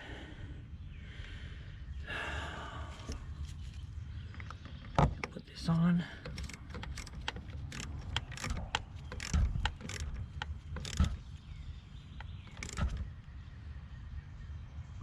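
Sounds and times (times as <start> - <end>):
wrench clicking and rattling: 6.2 - 11.4, 12.1 - 13.1.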